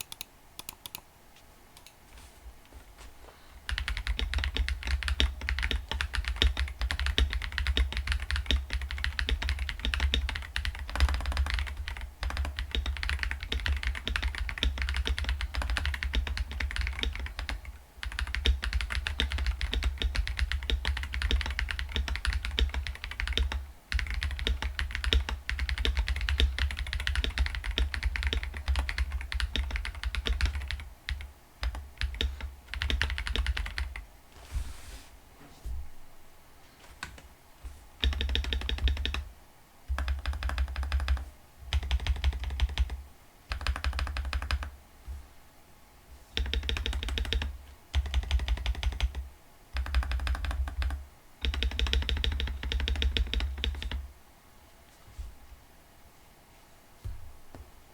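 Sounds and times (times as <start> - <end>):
typing on mechanical keyboard: 3.7 - 34.0, 38.0 - 39.3, 39.9 - 44.7, 46.4 - 54.0.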